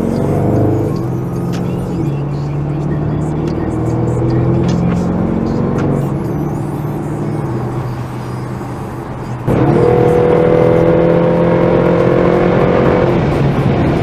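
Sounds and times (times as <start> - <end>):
car engine accelerating: 0.0 - 14.0.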